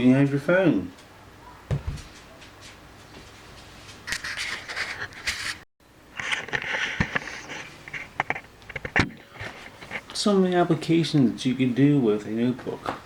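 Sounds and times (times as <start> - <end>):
scraping and rustling: 1.8 - 5.6, 6.2 - 10.2.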